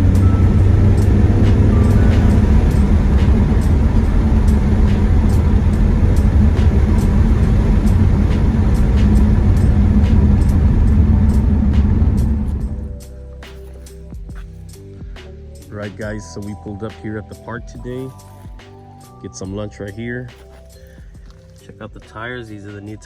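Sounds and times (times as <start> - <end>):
car engine and road drone: 0.0 - 13.8.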